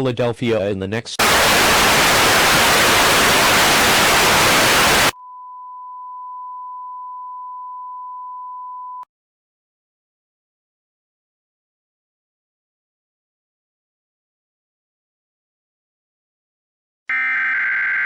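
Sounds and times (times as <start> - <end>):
television static hiss: 1.2 - 5.2.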